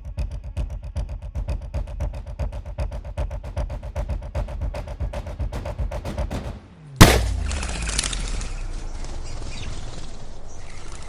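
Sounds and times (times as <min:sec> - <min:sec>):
air gun shot: 0:06.0 - 0:08.7.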